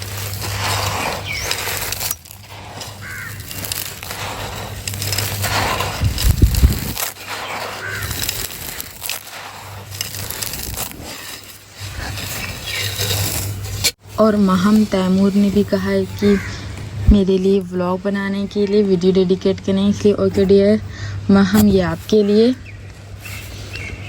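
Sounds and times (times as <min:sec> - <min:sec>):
dry sand crunching in a pot: 0:00.0 - 0:24.0
crows cawing: 0:02.5 - 0:04.4, 0:07.4 - 0:08.9, 0:16.2 - 0:16.8.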